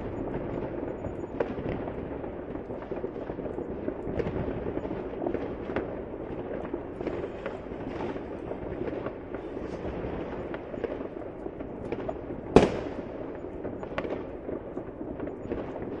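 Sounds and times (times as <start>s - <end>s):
fireworks crackling: 0.0s - 16.0s
loud sharp firework bang: 12.5s - 13.1s.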